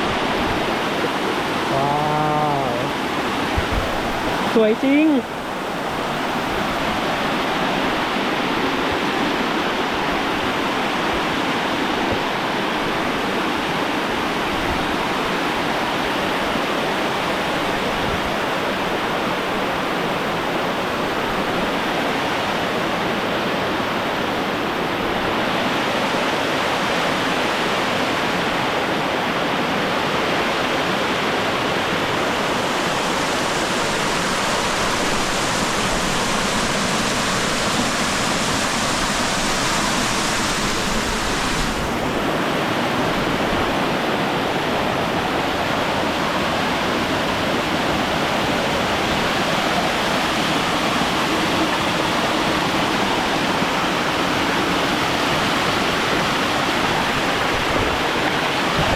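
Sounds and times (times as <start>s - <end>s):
waterfall rushing: 0.0s - 17.8s, 18.4s - 58.9s.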